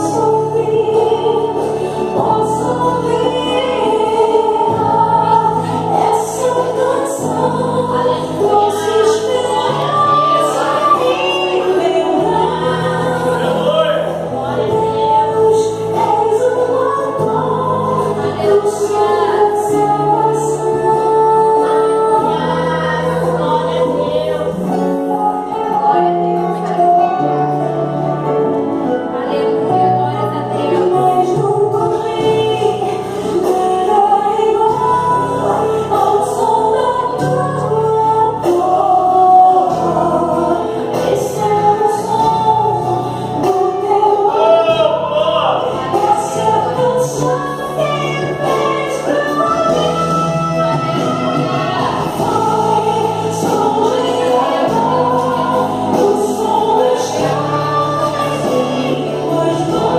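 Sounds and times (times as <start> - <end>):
woman singing gospel song: 0.0 - 27.4, 28.8 - 59.9
bass notes: 0.0 - 59.9
choir singing: 0.0 - 59.9
band playing: 43.5 - 59.9.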